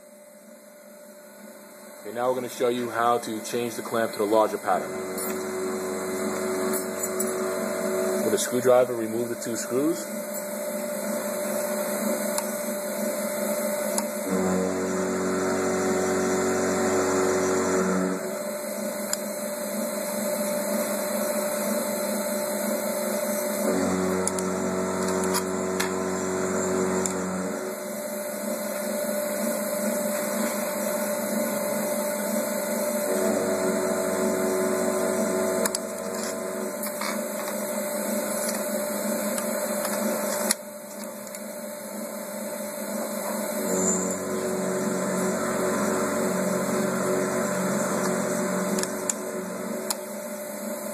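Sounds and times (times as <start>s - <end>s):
machine electrical hum: 0.0s - 50.9s
low drone: 33.1s - 37.2s, 43.6s - 50.0s.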